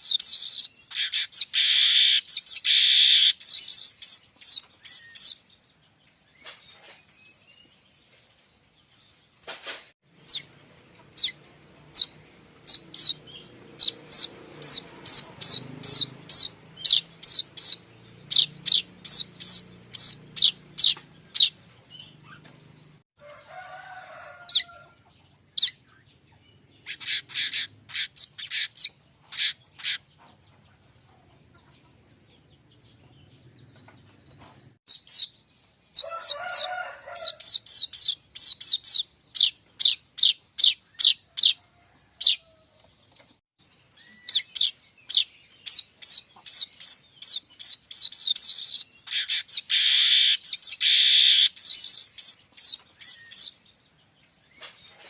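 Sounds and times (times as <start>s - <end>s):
bird chirping sharply: 0.0s - 5.7s, 11.1s - 22.8s, 43.8s - 55.0s.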